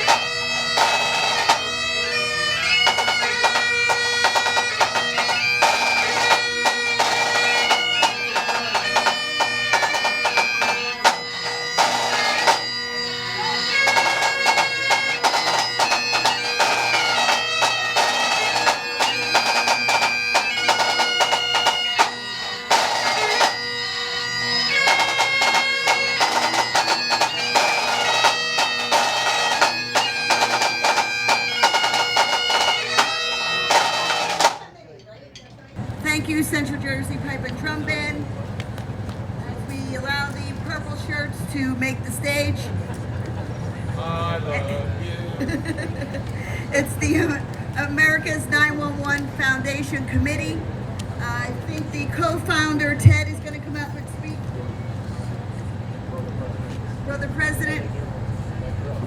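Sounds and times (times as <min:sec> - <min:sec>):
drums beating: 0:00.0 - 0:12.8, 0:13.7 - 0:23.7, 0:24.5 - 0:34.7, 0:51.3 - 0:53.6
bagpipes playing melody: 0:00.0 - 0:34.7, 0:45.4 - 0:56.0.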